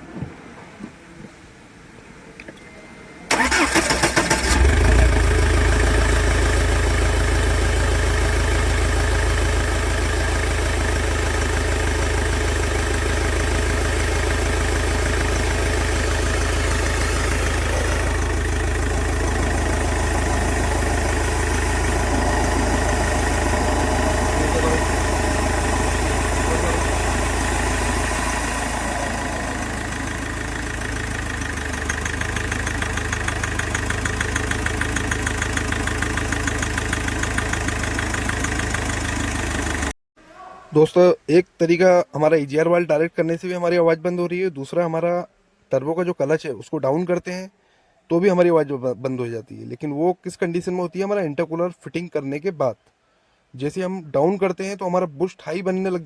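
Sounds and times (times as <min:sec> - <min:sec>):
diesel engine starting and running: 0:03.3 - 0:40.0
rapid rhythmic engine knock: 0:17.0 - 0:39.9.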